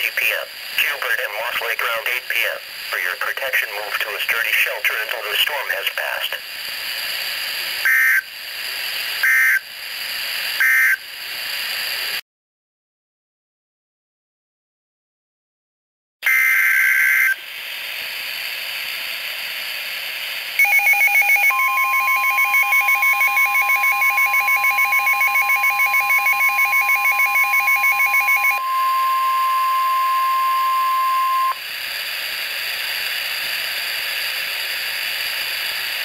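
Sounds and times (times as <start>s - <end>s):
radio hiss: 0.0s - 12.2s
steady warning alarm tone: 16.3s - 17.4s, 20.6s - 31.6s
fast pulsing electronic beeping: 20.6s - 31.6s
warbling data tones: 20.6s - 31.6s.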